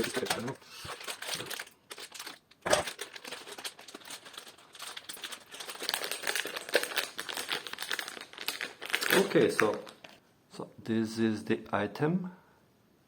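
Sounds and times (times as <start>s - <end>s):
plastic packaging crackling: 0.0s - 10.2s.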